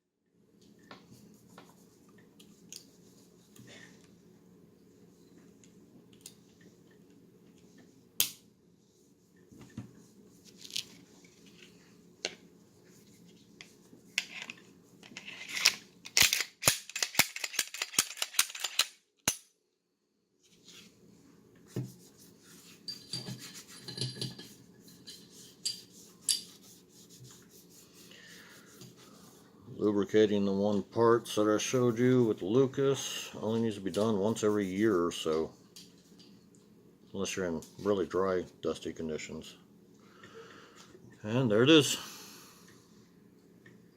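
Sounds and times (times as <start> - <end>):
pistol parts clicking: 15.6 - 19.5.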